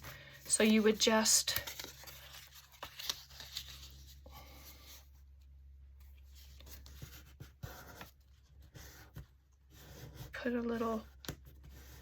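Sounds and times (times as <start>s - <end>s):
paper rustling: 0.0s - 5.1s.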